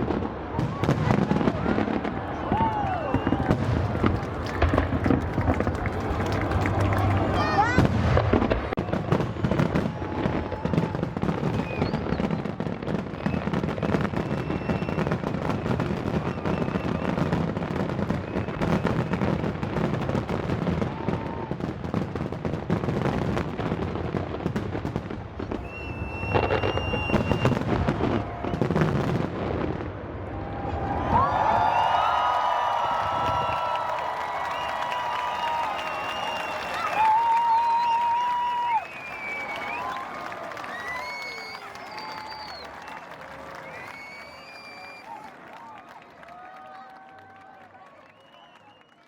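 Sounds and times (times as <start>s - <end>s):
fireworks bangs and crackling: 0.0s - 47.6s
high firework whistle: 2.5s - 3.7s, 9.1s - 19.5s, 25.5s - 28.9s, 30.6s - 45.3s, 48.0s - 49.0s.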